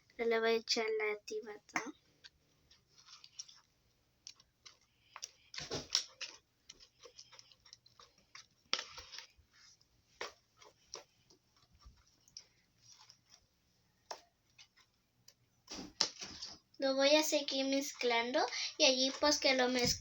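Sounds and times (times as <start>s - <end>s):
sticky slime squishes: 0.2s - 20.0s
spoon scraping container: 1.9s - 14.9s.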